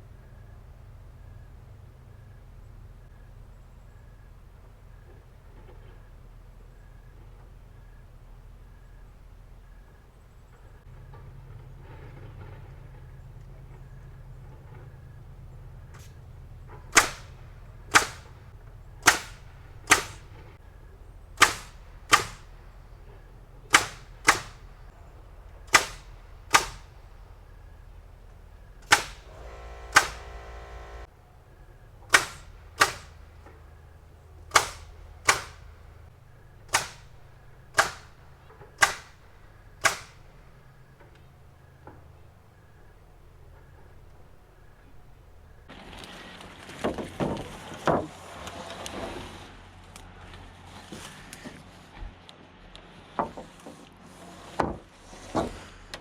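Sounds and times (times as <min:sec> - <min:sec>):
low steady hum: 0:00.0 - 0:46.0
pneumatic nail gun firing: 0:16.0 - 0:20.6, 0:21.3 - 0:31.1, 0:31.9 - 0:42.1.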